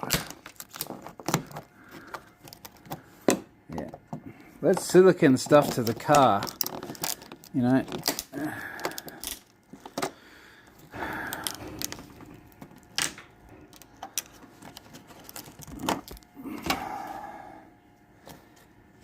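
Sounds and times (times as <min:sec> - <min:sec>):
plastic trim clicking and cracking: 0:00.0 - 0:04.0, 0:04.7 - 0:10.2.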